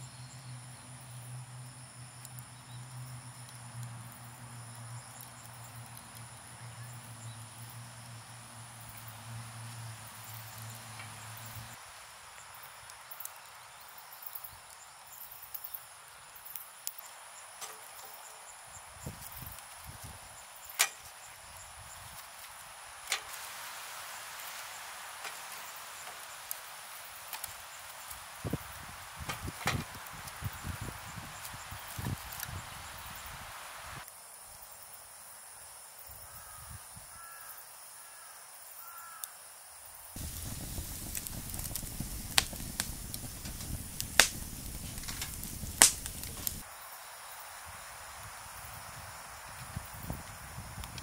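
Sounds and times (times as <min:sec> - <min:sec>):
soft hiss: 0:00.0 - 0:37.5, 0:40.0 - 0:51.0
insects chirping: 0:00.0 - 0:51.0
campfire crackling: 0:00.2 - 0:34.2, 0:40.1 - 0:51.0
sharp clicks: 0:41.1 - 0:46.6.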